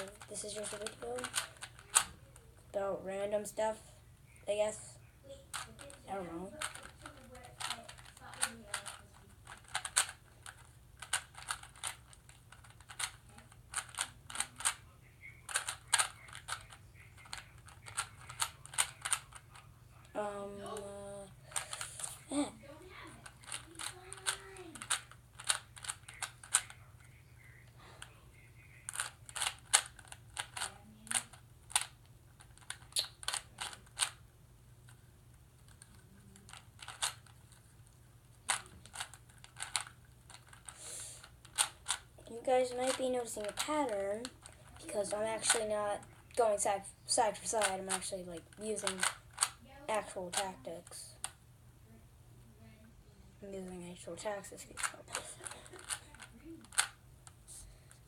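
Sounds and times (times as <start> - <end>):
puzzle cube clicking as turned: 0.0 - 2.4, 6.6 - 14.8, 15.5 - 19.7, 21.5 - 22.1, 23.2 - 26.8, 28.8 - 34.2, 35.6 - 37.6, 38.3 - 44.8, 47.5 - 49.6, 54.8 - 57.4.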